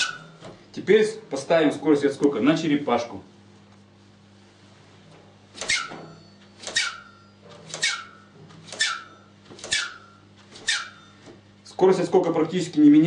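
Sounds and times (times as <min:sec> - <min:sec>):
suspension fork whistling when compressed: 0:05.6 - 0:11.2.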